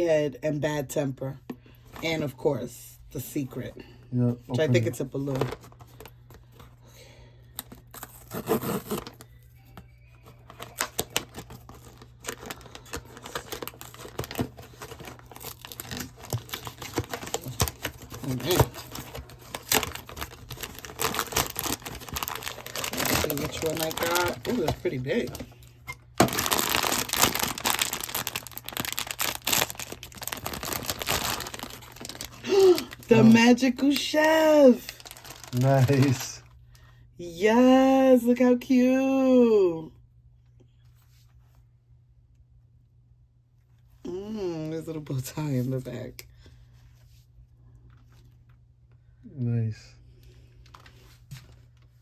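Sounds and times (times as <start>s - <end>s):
faint steady hum: 0.0s - 52.0s
packaging crackling and crinkling: 10.2s - 36.4s.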